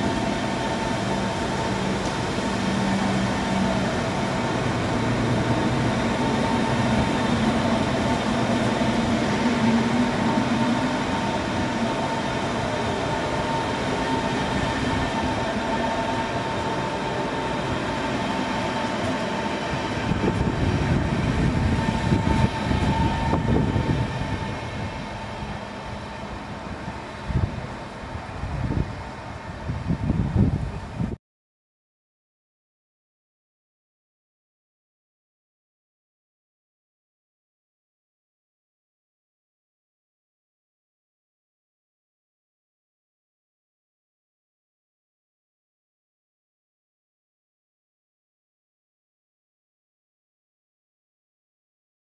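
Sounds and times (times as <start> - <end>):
tram running on rails: 0.0 - 31.2
tram whine: 0.0 - 31.2.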